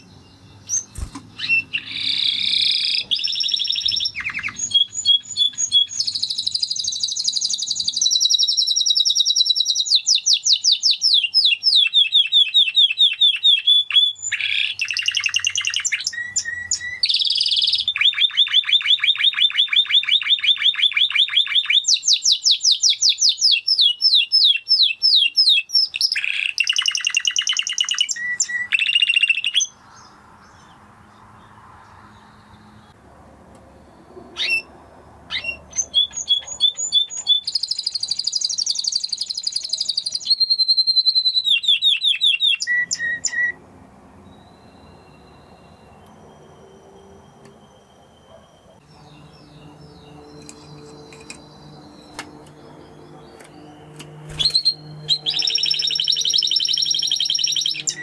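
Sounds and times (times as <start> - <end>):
canary singing: 0.0 - 31.6, 33.8 - 43.6, 44.2 - 58.0.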